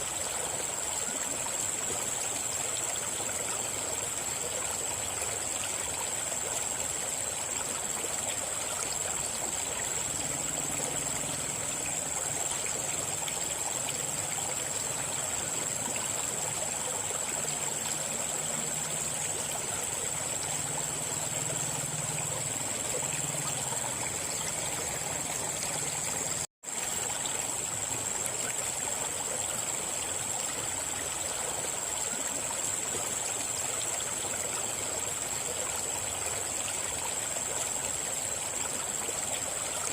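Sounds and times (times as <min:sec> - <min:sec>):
river water rushing: 0:15.3 - 0:28.4.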